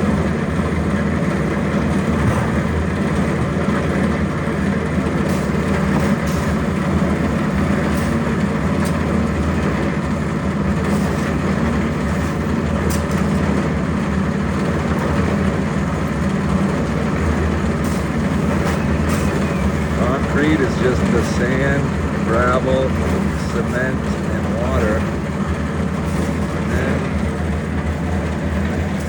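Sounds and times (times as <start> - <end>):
concrete mixer running: 0.0 - 29.0.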